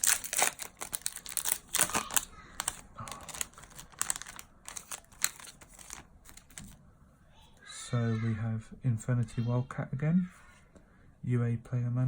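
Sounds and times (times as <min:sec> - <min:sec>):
foil wrapper crinkling and tearing: 0:00.0 - 0:06.8.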